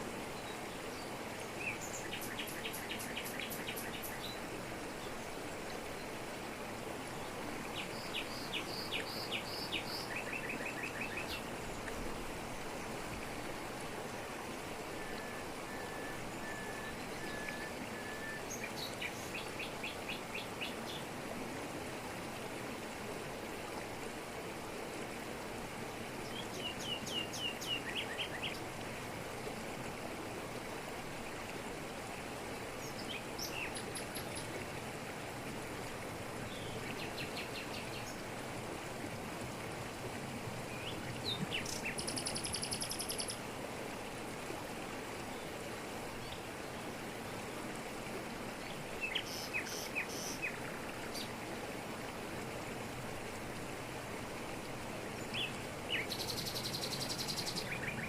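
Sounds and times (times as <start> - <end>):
waterfall rushing over rocks: 0.0 - 56.1
songbirds chirping: 0.3 - 6.2, 7.1 - 14.3, 15.0 - 21.1, 36.4 - 38.2, 48.6 - 51.4.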